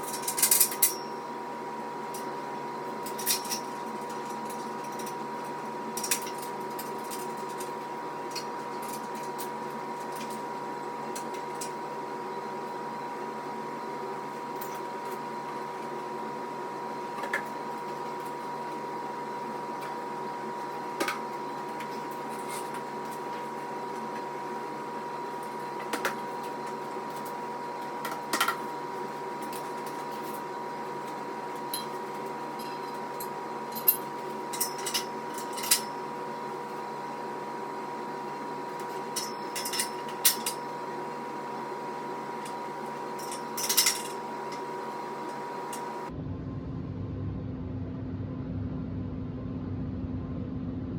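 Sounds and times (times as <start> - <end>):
steady hum: 43.1 - 50.9.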